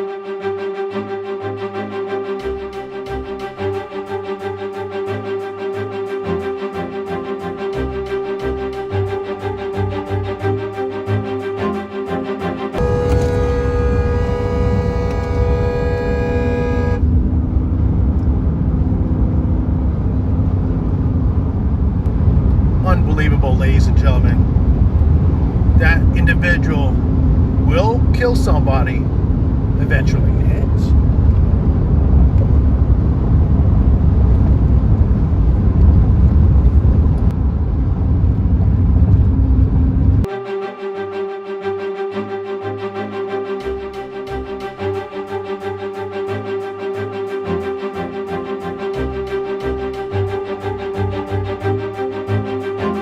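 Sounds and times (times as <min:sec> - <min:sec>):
music with flute melody: 0:00.0 - 0:17.1, 0:40.3 - 0:53.0
sustained tone with overtones: 0:12.8 - 0:18.1
car driving rumble from inside: 0:12.8 - 0:26.2, 0:29.0 - 0:40.3.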